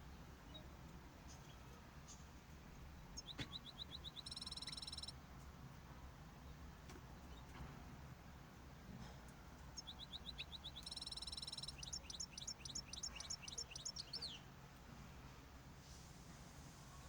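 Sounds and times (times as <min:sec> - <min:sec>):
cage bird singing: 0:00.0 - 0:02.3, 0:02.9 - 0:05.2, 0:09.6 - 0:14.5
low steady hum: 0:00.0 - 0:15.6.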